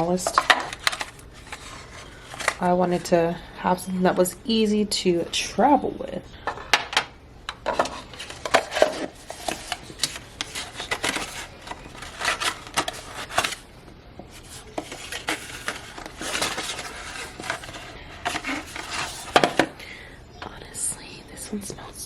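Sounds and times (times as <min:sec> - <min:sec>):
paper packaging rustling: 0:00.0 - 0:02.7, 0:06.6 - 0:19.8.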